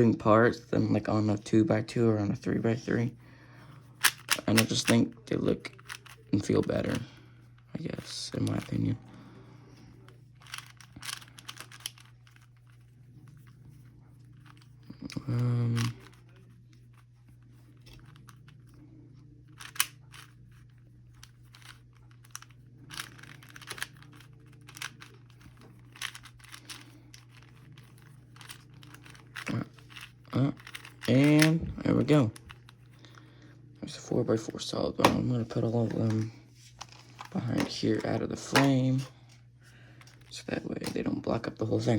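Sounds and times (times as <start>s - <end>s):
low hum: 0.0s - 41.9s
puzzle cube clicking: 4.0s - 5.0s, 5.7s - 7.0s, 10.4s - 12.5s, 19.5s - 20.3s, 21.2s - 31.6s.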